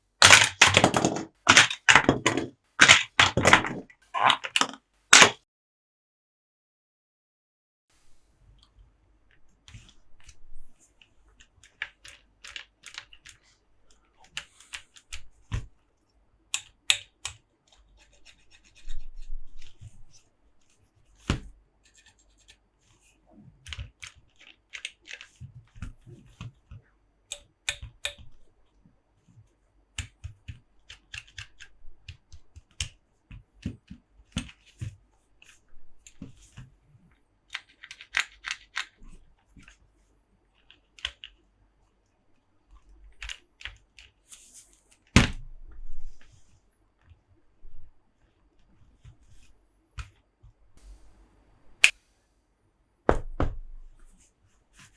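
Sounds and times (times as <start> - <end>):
plastic toy trucks tapping and clicking: 0.2 - 5.4, 11.4 - 13.5, 16.6 - 18.9, 23.7 - 28.4, 30.0 - 35.0, 37.5 - 39.0, 40.6 - 41.4
scratching and rubbing: 17.7 - 23.3.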